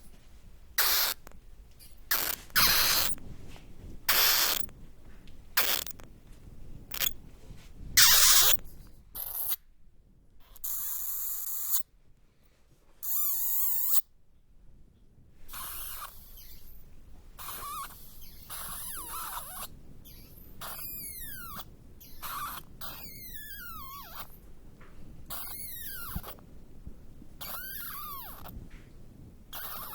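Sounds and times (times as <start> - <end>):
bat squeaks and chittering: 0.8 - 1.3, 2.1 - 3.2, 4.1 - 4.7, 5.6 - 6.0, 6.9 - 7.2, 8.0 - 8.6, 9.2 - 9.6, 10.4 - 11.8, 13.0 - 14.1, 15.5 - 16.8, 17.4 - 24.4, 25.3 - 26.4, 27.4 - 28.6, 29.5 - 29.9
hissing: 0.8 - 1.3, 2.1 - 3.2, 4.1 - 4.7, 5.6 - 6.0.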